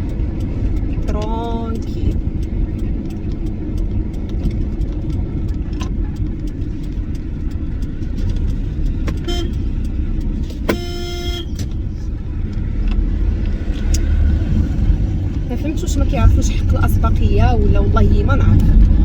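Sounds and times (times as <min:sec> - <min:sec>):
car driving rumble: 0:00.0 - 0:19.0
car horn honking: 0:09.2 - 0:09.8, 0:10.6 - 0:11.8.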